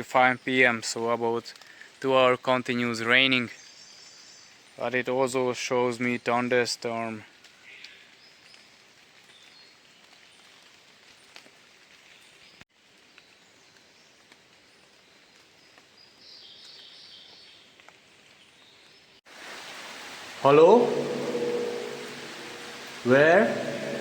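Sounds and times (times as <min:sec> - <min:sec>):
high bird calls: 0:20.4 - 0:24.0.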